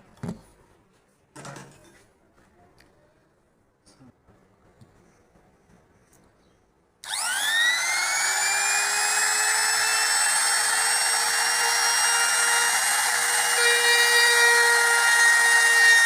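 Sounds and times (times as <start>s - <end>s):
power tool motor whining: 7.0s - 16.0s.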